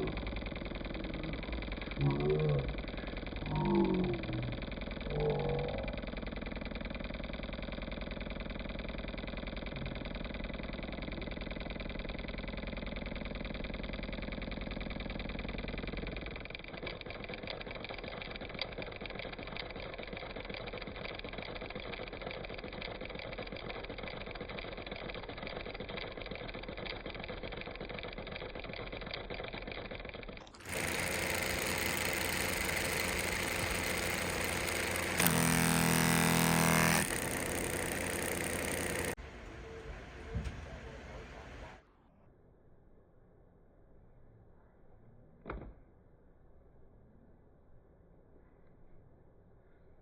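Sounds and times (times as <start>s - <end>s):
rapid mechanical ticking: 0.0s - 39.2s
engine running: 0.0s - 41.9s.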